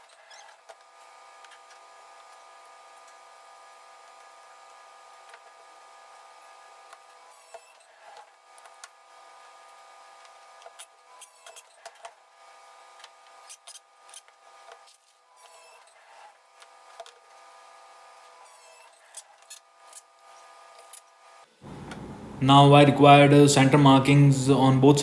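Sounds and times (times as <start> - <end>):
steady hum: 21.6 - 25.0.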